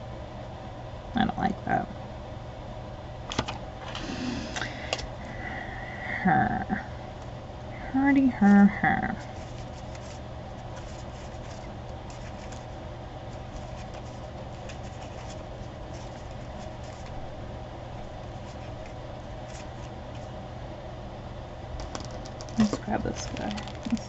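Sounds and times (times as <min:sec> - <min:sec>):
steady low hum: 0:00.0 - 0:24.0
paper rustling: 0:09.2 - 0:17.3, 0:18.0 - 0:20.4, 0:21.8 - 0:24.0.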